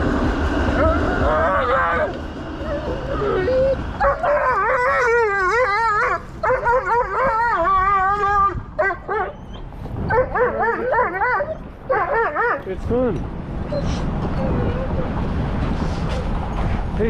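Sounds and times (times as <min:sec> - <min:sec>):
dog howling: 0:00.8 - 0:12.6, 0:13.7 - 0:15.2.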